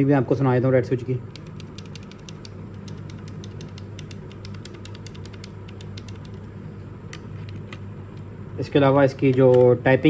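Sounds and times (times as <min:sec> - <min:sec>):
keyboard keys clacking: 0:01.4 - 0:06.4.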